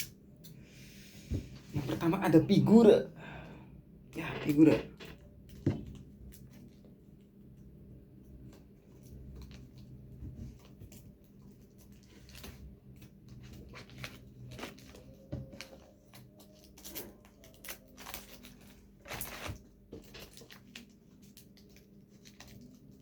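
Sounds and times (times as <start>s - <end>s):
packaging rustling: 9.0s - 23.0s.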